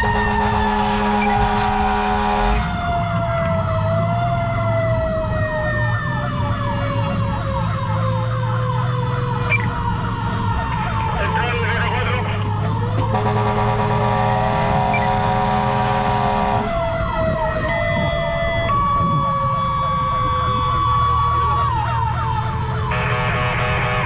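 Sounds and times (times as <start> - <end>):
steady horn tone: 0.0 - 2.8, 13.0 - 17.0, 22.8 - 24.0
electronic siren yelping: 0.0 - 24.0
fire truck engine: 0.0 - 24.0
siren tone falling in pitch: 12.5 - 24.0.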